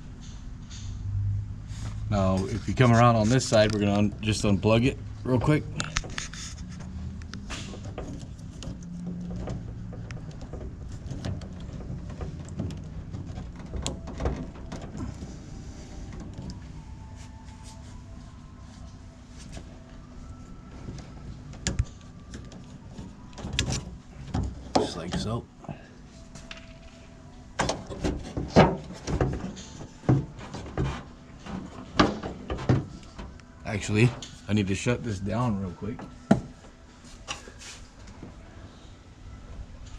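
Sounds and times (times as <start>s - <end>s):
low steady hum: 0.0s - 39.9s
rattling and rubbing: 5.6s - 16.6s, 27.6s - 33.3s.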